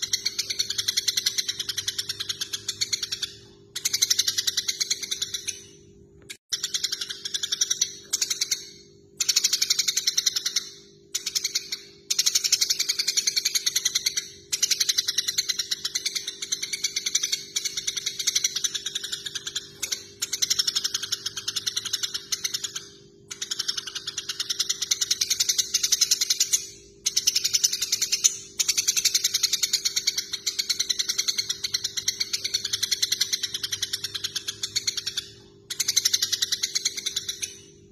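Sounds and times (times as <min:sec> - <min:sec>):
sparrows chattering: 0:11.2 - 0:37.9.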